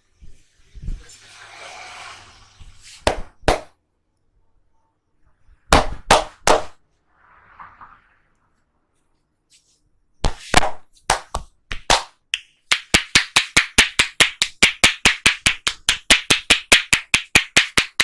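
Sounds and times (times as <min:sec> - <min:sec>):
soft hissing: 0:00.5 - 0:03.0
hand massage slaps: 0:03.0 - 0:03.8, 0:05.7 - 0:06.8, 0:10.2 - 0:18.0.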